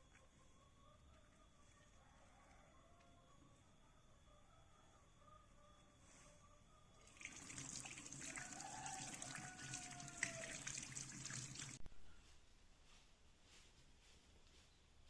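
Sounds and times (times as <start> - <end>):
water running from a tap: 7.1 - 11.8.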